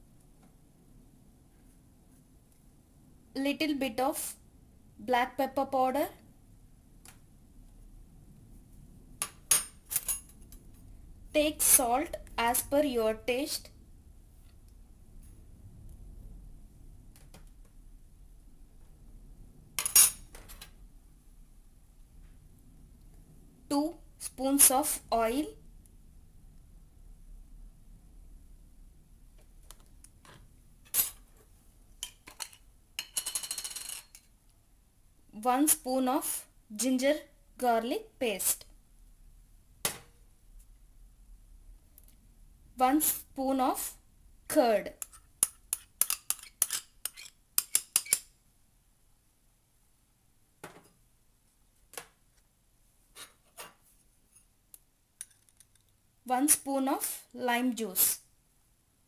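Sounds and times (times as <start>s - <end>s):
metal spoon clinking on container: 45.0s - 48.2s.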